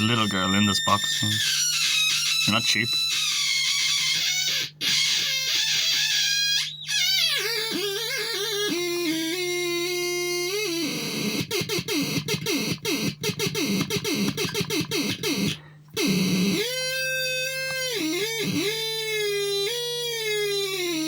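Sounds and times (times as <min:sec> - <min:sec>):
synthesizer wailing tones: 0:00.0 - 0:03.0.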